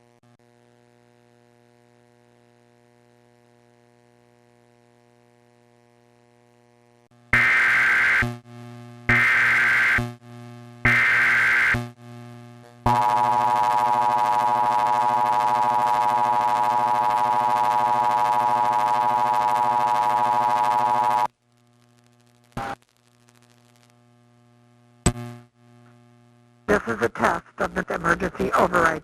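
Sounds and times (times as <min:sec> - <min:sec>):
harsh steady attention tone: 0:07.4 - 0:08.2, 0:09.1 - 0:10.0, 0:10.8 - 0:11.8, 0:12.7 - 0:21.3
low electrical hum: 0:11.9 - 0:29.0
screeching data burst: 0:12.9 - 0:21.3.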